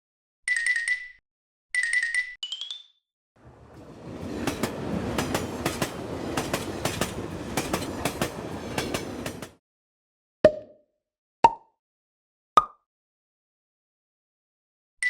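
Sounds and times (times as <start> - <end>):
train wheels clattering over rail joints: 3.5 - 9.6.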